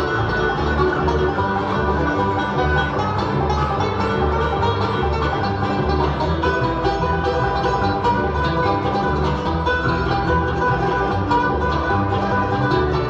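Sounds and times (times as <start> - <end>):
banjo picking: 0.0 - 13.0
bluegrass music: 0.0 - 13.0.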